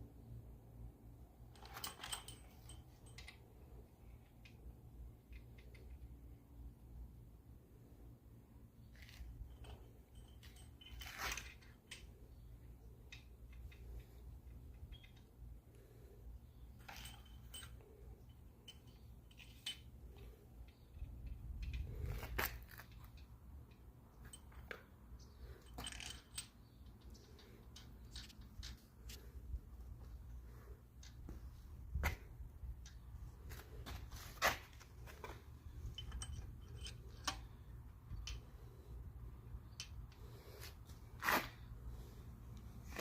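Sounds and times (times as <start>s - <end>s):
steady low hum: 0.0s - 43.0s
metallic clicks and taps of bolts: 35.2s - 38.6s.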